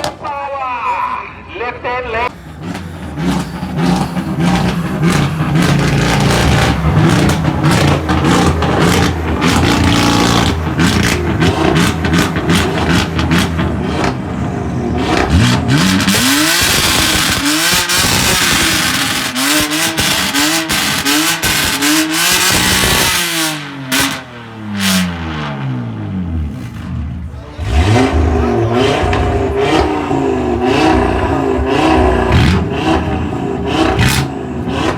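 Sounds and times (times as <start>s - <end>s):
car engine revving: 2.2s - 34.9s
car exhaust crackles and pops: 2.3s - 14.4s, 15.0s - 25.6s, 33.8s - 34.9s.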